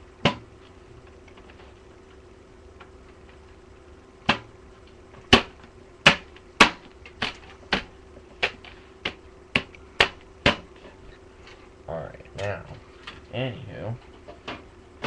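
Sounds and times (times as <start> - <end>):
knocks on computer case panel: 0.2 - 0.5, 4.2 - 4.5, 5.3 - 10.7.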